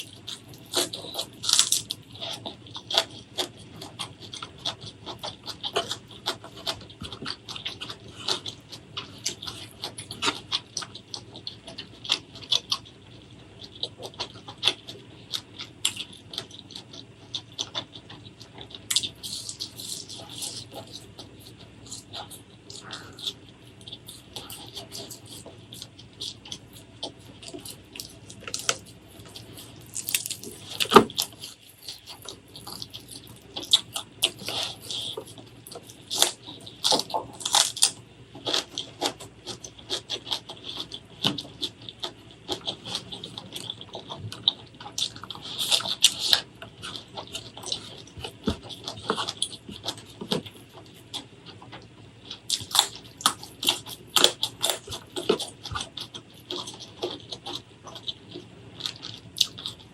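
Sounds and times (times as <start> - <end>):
chewing with wet smacks: 0.0 - 59.9
crisp mouth clicks: 21.9 - 31.4.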